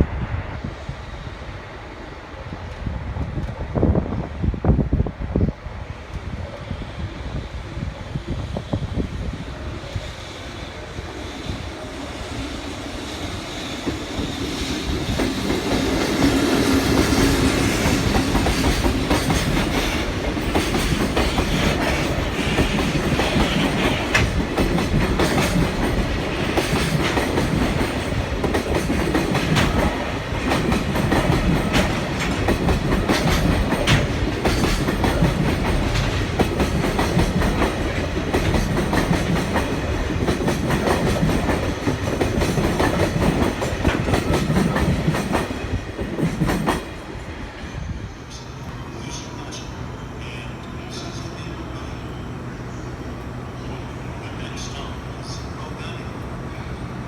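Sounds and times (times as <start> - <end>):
train wheels clattering over rail joints: 13.6 - 47.2.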